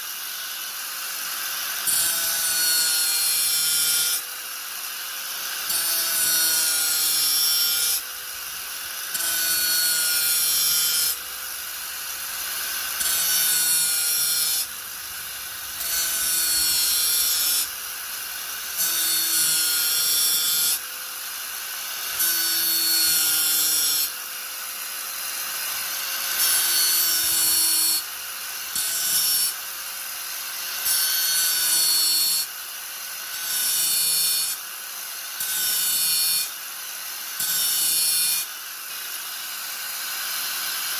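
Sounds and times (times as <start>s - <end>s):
angle grinder grinding: 0.0s - 32.6s.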